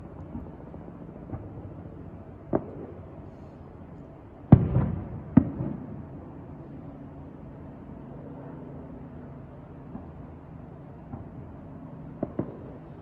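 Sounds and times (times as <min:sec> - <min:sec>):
low engine hum: 0:00.0 - 0:13.0
fireworks booming: 0:02.5 - 0:03.0, 0:04.5 - 0:06.0, 0:12.2 - 0:12.9.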